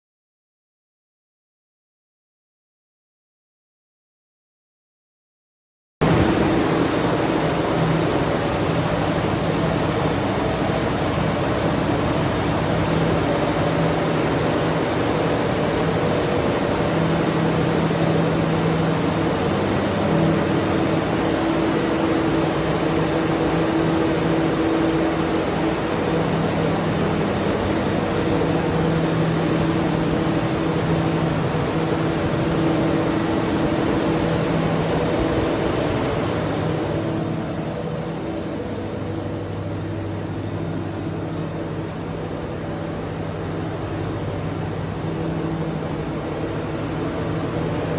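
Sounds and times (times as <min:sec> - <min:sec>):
generator engine drone: 0:06.0 - 0:47.9.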